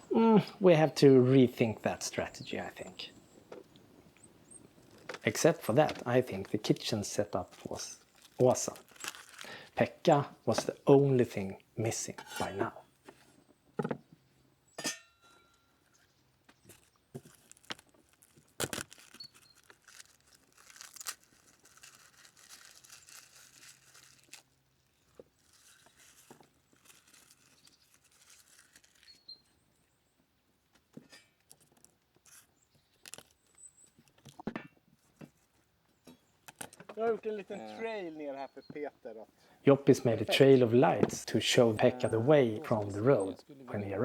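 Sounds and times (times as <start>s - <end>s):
faint rustling and crinkling: 1.8s - 9.7s, 11.4s - 14.2s, 15.6s - 39.6s.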